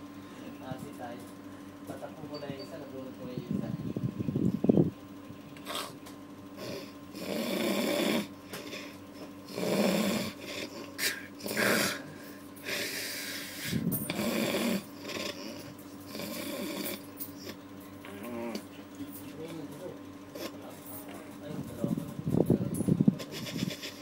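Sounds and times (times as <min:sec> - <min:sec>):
faint steady hum: 0:00.0 - 0:24.0
heavy snoring: 0:06.6 - 0:18.6, 0:23.2 - 0:24.0.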